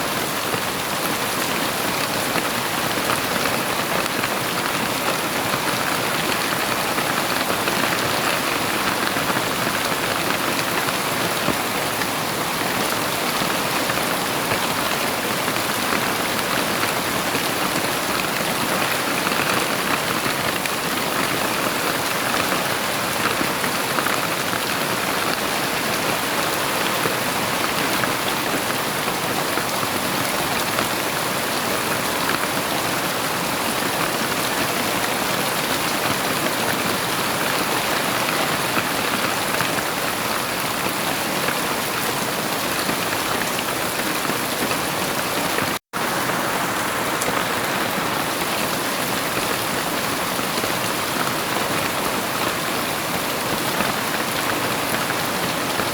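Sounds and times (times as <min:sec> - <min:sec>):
heavy rain falling: 0:00.0 - 0:55.9.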